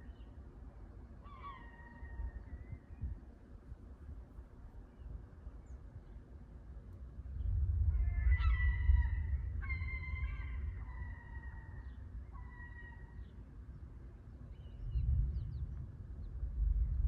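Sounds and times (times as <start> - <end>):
rolling thunder: 14.9 - 17.0.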